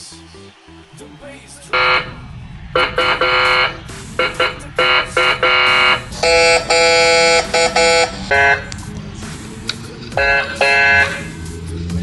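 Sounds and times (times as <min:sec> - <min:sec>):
electronic air horn honks: 0:01.8 - 0:02.2, 0:02.8 - 0:08.8, 0:10.2 - 0:11.4.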